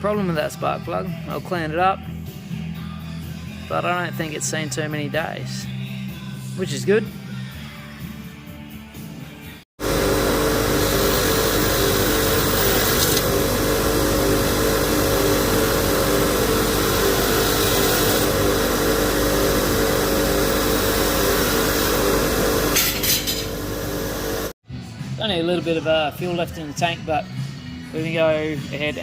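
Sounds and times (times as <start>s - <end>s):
electric power tool whirring: 9.8s - 24.5s.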